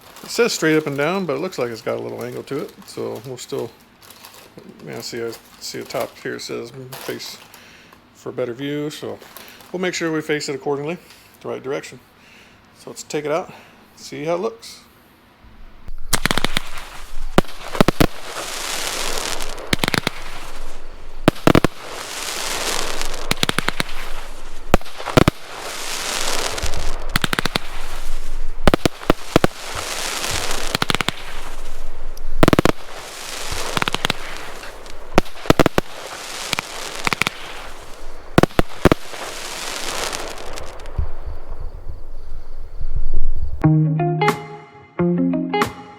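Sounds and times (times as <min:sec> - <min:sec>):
firework crackling: 0:00.0 - 0:06.2, 0:15.9 - 0:42.2
firework launch and burst reports: 0:16.1 - 0:41.6.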